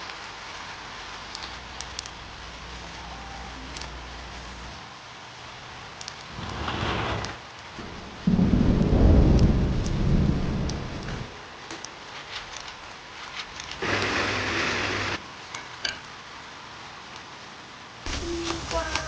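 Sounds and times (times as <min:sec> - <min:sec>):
steady rain: 0:00.0 - 0:19.0
deep thunder rumble: 0:06.3 - 0:11.3
loud hiss: 0:13.8 - 0:15.2, 0:18.1 - 0:19.0.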